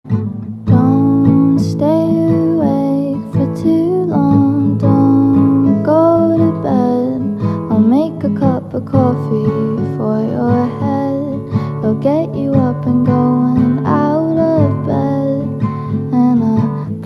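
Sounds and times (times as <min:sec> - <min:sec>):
acoustic guitar music: 0:00.1 - 0:17.0.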